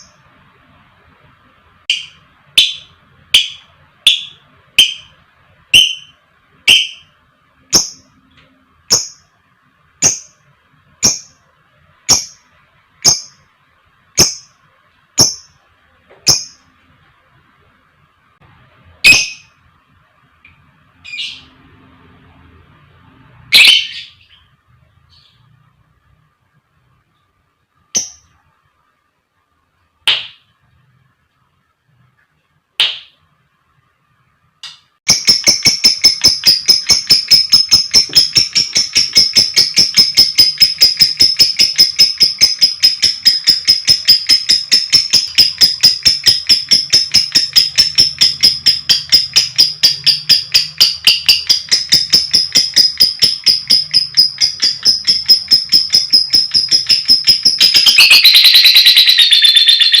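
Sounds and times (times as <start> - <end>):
lovebird chirping and chattering: 1.9 - 7.1, 7.7 - 8.2, 8.8 - 9.3, 10.0 - 10.4, 11.0 - 11.4, 12.0 - 13.4, 14.1 - 14.6, 15.2 - 15.6, 16.2 - 16.7, 19.0 - 19.6, 23.5 - 24.5, 27.9 - 28.4, 35.1 - 60.0.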